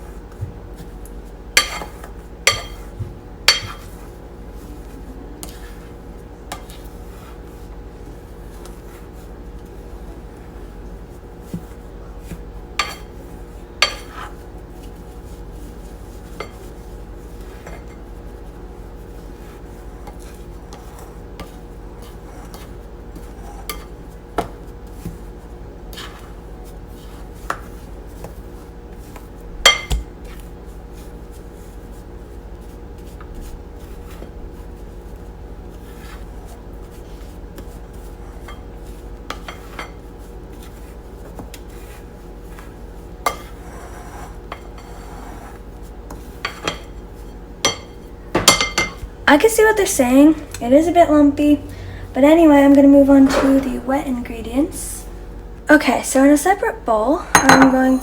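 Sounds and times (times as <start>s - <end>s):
utensil scraping a mixing bowl: 0.0s - 47.8s
low hum: 50.3s - 55.7s.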